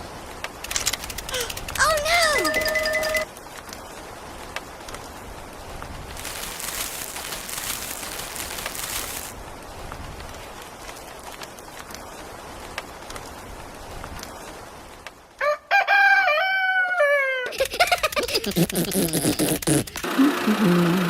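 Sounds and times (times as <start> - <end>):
rooster crowing: 15.4 - 17.5.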